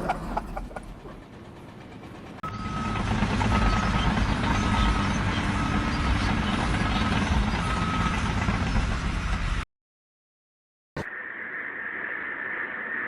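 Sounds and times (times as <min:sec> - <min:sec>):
heavy engine running: 0:00.0 - 0:09.6.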